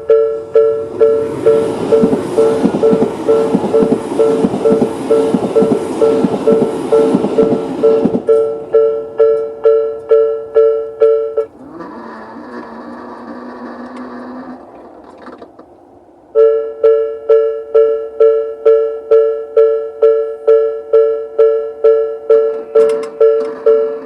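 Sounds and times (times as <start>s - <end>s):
train wheel clatter: 0.0s - 10.2s, 10.8s - 15.8s, 22.3s - 24.0s
level crossing warning bell: 0.0s - 15.3s, 16.3s - 24.0s.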